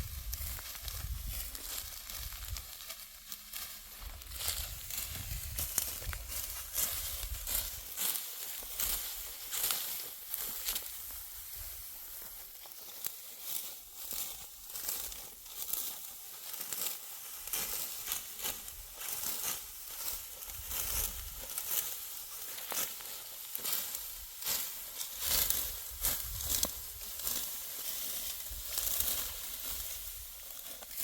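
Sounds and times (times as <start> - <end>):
wind rumble on microphone: 0.0 - 1.6, 4.4 - 6.3
dry wheat stalks crackling: 0.0 - 31.0.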